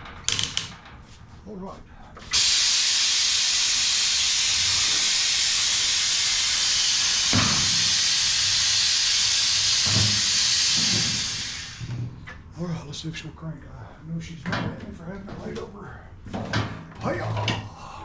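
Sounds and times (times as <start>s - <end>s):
hose water spray hissing: 2.3s - 11.9s.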